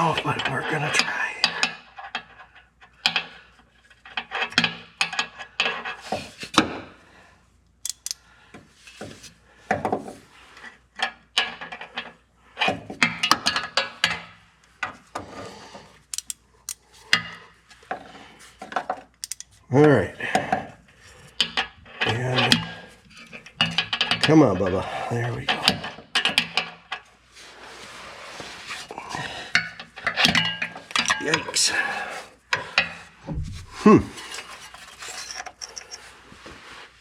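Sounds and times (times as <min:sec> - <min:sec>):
metal hand tools clinking: 0:07.8 - 0:08.2, 0:16.1 - 0:16.8, 0:19.2 - 0:19.6, 0:30.1 - 0:32.1, 0:34.4 - 0:36.1.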